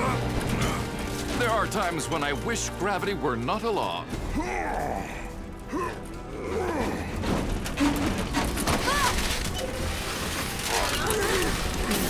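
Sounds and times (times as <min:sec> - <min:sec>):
clattering and crashing effects: 0:00.0 - 0:04.3, 0:07.1 - 0:12.0
cartoon background music: 0:00.0 - 0:12.0.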